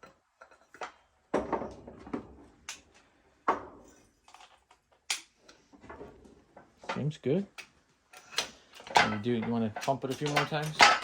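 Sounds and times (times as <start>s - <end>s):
hydraulic jack metallic clanks: 8.2s - 11.0s.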